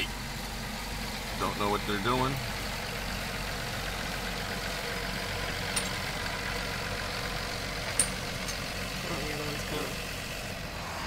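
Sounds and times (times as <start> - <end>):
heavy engine humming: 0.0 - 11.0.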